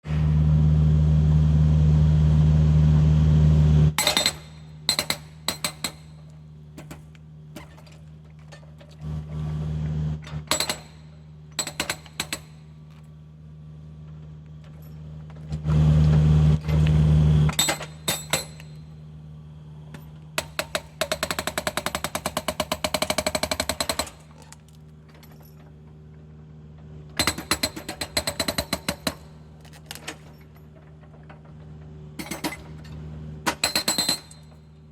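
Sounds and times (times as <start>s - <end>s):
hydraulic breaker hammering: 4.0s - 7.9s, 10.4s - 12.9s, 17.5s - 19.0s, 20.4s - 24.7s, 27.2s - 30.2s, 32.2s - 32.8s, 33.4s - 34.9s.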